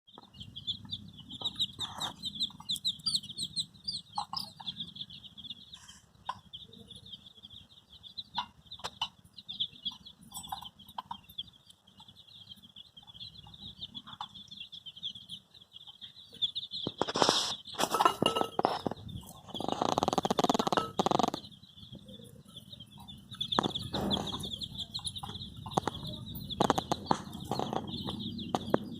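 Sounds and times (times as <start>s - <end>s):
baby chicks peeping: 0.1s - 28.9s
low clucking calls: 16.8s - 22.2s, 22.9s - 28.9s.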